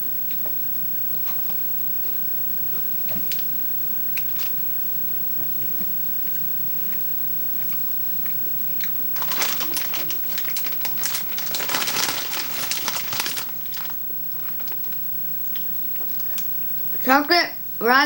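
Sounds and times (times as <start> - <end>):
candy wrapper crinkling: 8.2 - 16.5.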